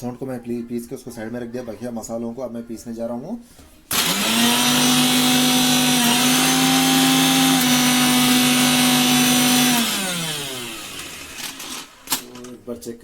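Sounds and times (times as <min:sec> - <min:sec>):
mixer grinder motor whine: 0:03.9 - 0:12.1.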